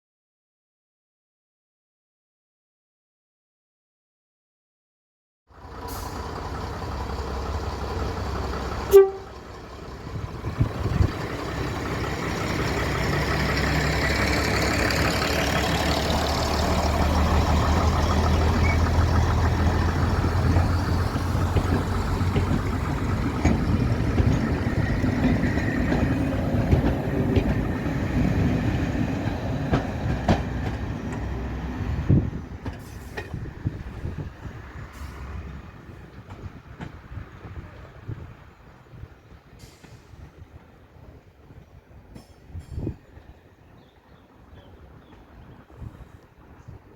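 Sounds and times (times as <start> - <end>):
train rumbling on rails: 5.5 - 46.9
train horn toot: 8.9 - 9.4.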